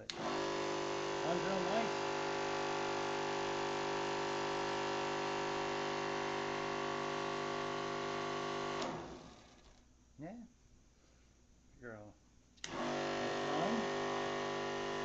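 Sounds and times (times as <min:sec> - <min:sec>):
electric motor running: 0:00.0 - 0:09.8, 0:12.7 - 0:15.0
switch click: 0:12.6 - 0:12.8.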